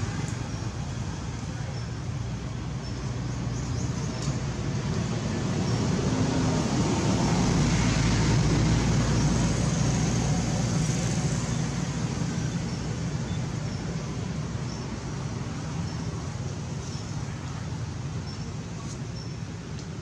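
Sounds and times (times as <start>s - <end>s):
passing vehicle rumble: 0.0s - 20.0s.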